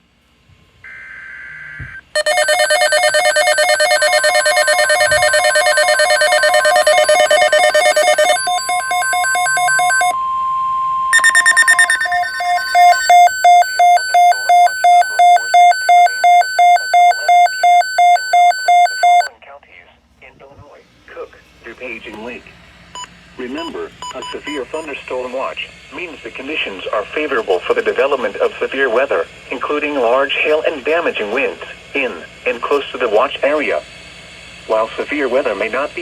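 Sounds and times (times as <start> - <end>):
weather radio electronic beeping: 1.8 - 10.2, 11.1 - 19.3, 23.0 - 25.0, 27.7 - 28.6
steady alarm tone: 2.1 - 19.3
pulsing beep: 2.2 - 19.3.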